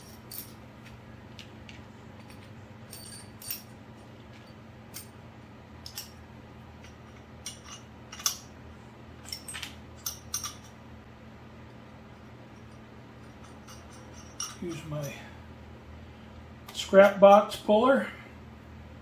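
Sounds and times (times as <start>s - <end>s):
metal tools clinking: 0.0s - 0.6s, 2.2s - 5.1s, 5.8s - 6.2s, 6.8s - 8.5s, 9.2s - 10.8s, 12.5s - 15.4s
low electrical hum: 0.0s - 19.0s.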